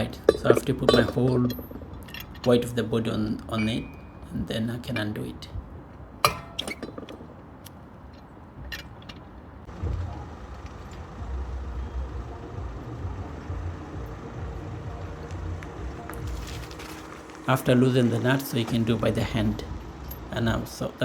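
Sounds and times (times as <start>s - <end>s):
wheel brace clicking on wheel nuts: 0.0s - 4.2s, 6.2s - 17.5s
vehicle rumble: 0.0s - 21.0s.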